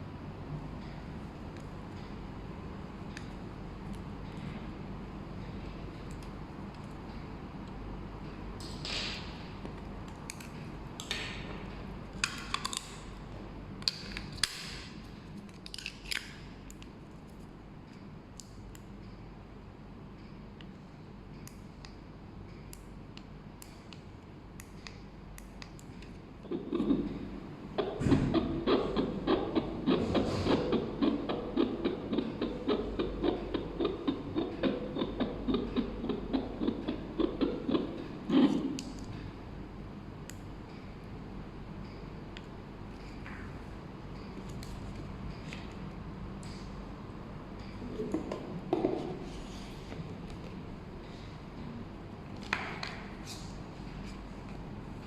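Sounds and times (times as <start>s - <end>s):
steady low hum: 0.0s - 55.0s
fetal heartbeat whooshing pulses: 26.4s - 38.8s.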